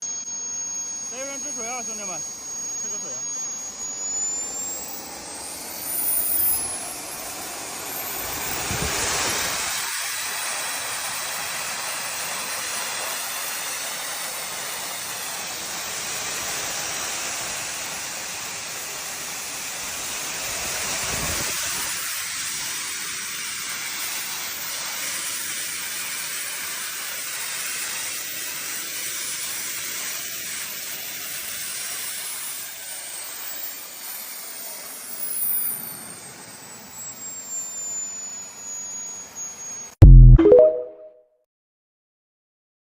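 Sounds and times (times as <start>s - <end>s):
blower dryer blowing air: 0.1s - 32.0s.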